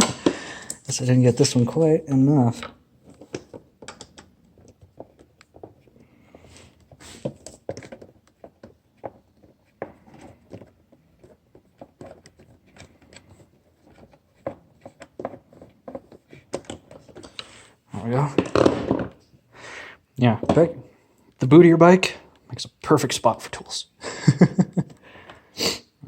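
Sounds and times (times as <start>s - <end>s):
plastic parts handled: 2.4s - 19.3s.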